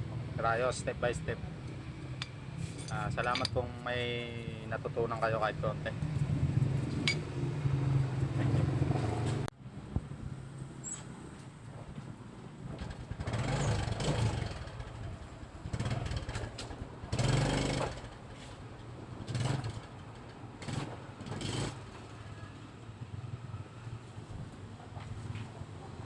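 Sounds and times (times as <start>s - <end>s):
motorcycle engine revving: 12.7s - 18.2s, 19.2s - 20.0s, 20.6s - 22.2s.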